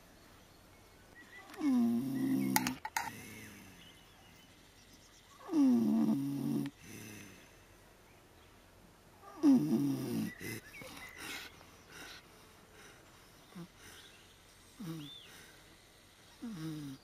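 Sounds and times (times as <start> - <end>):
pigs snoring: 1.6 - 3.8, 5.5 - 7.5, 9.4 - 12.2, 14.8 - 15.5, 16.4 - 17.0.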